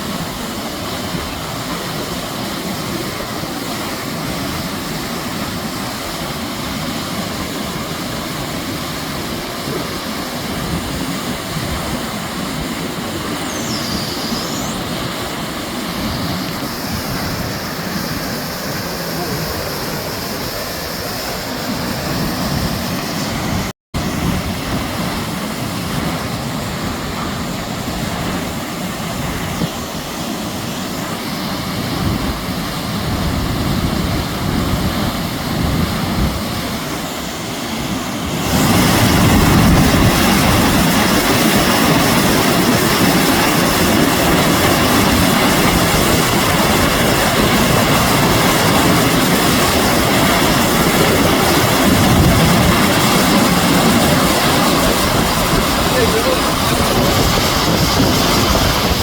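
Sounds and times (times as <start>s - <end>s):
wind: 0.0s - 59.0s
heavy rain: 38.0s - 59.0s.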